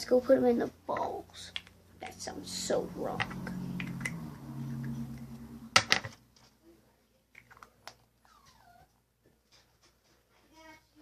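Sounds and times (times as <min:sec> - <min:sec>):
low hum: 0:00.8 - 0:06.0.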